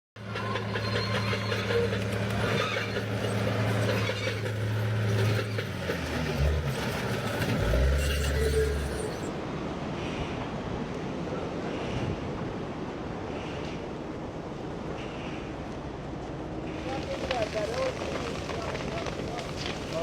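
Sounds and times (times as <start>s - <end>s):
heavy equipment engine running: 0.2s - 9.4s.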